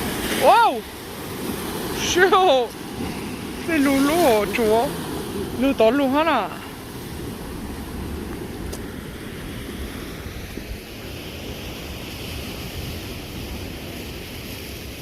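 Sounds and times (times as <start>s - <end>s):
surf washing on shore: 0.0s - 15.0s
wind buffeting microphone: 0.0s - 15.0s.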